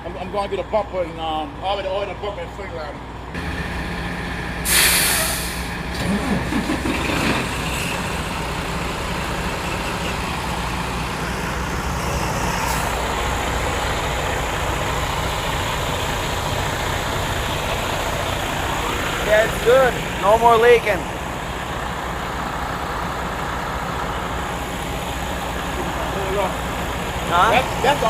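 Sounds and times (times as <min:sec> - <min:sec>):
diesel truck engine idling: 0:00.0 - 0:28.0
air hiss: 0:04.6 - 0:05.7.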